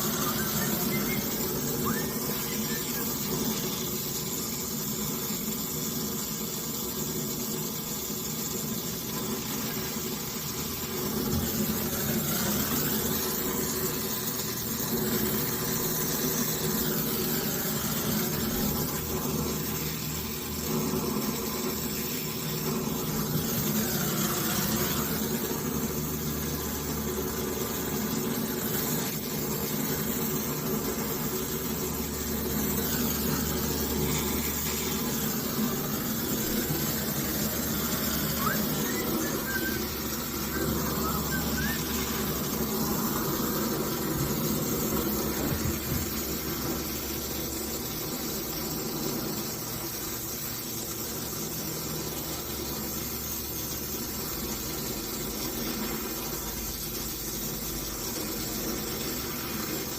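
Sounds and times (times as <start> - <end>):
motor humming: 0.0 - 5.6, 8.8 - 47.5.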